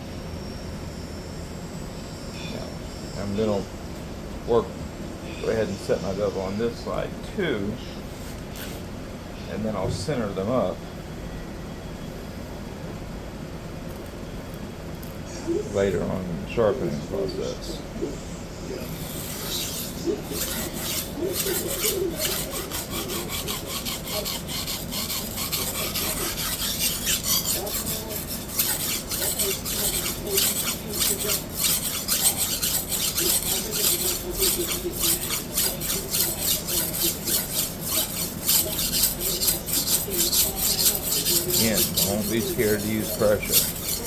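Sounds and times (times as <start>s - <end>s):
knife rasping on sharpening stone: 18.8s - 44.0s.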